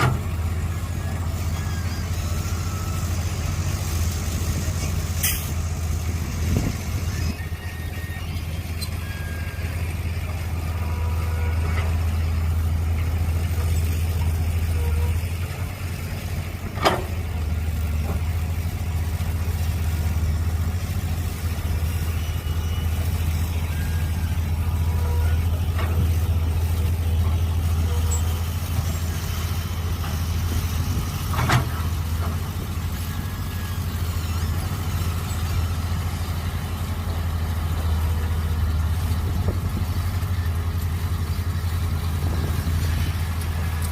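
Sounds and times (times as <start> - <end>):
excavator engine running: 0.0 - 43.9.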